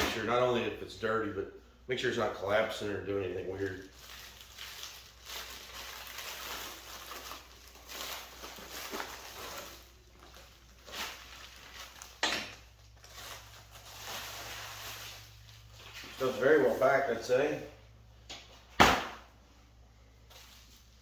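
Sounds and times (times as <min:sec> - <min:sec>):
packing material rustling: 0:03.4 - 0:17.3.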